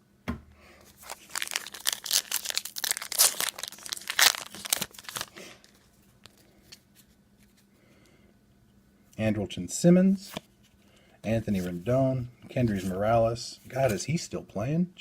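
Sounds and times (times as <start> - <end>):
foil wrapper tearing and crinkling: 0.9 - 5.4.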